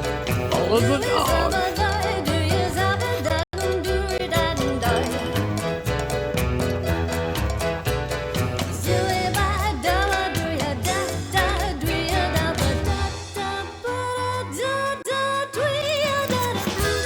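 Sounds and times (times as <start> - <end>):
pop song with female singer: 0.5 - 5.8, 8.6 - 17.0.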